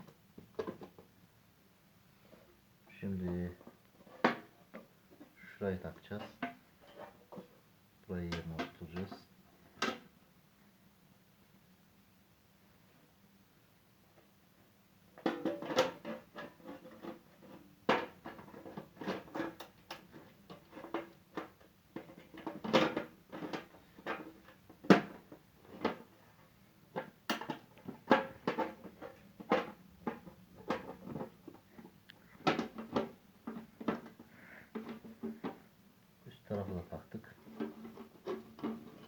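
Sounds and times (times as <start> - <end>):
plastic parts clicking and knocking: 0.0 - 1.1, 8.3 - 10.1, 15.2 - 26.2, 26.9 - 35.7, 36.6 - 39.0.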